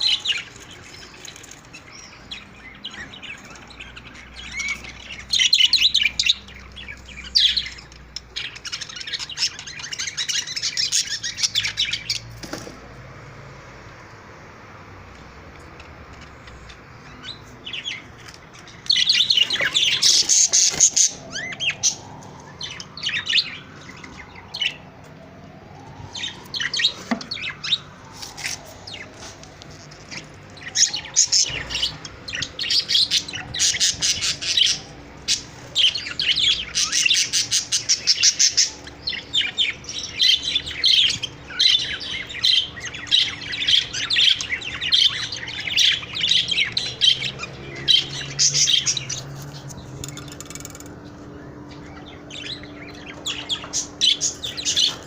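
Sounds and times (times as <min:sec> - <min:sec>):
budgerigars chirping: 0:00.0 - 0:12.6, 0:16.5 - 0:22.0, 0:30.1 - 0:55.0.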